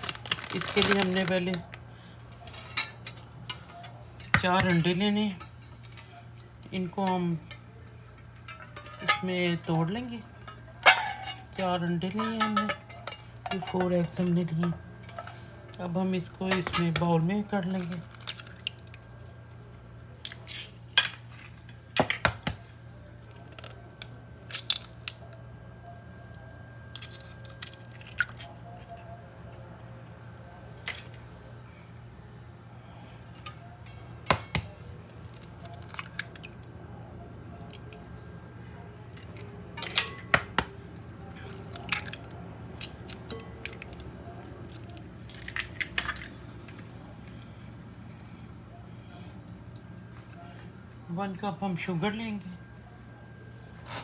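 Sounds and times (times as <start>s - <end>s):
mixing bowl and utensils clinking: 0.0s - 1.7s, 8.4s - 18.9s
steady low hum: 0.0s - 54.0s.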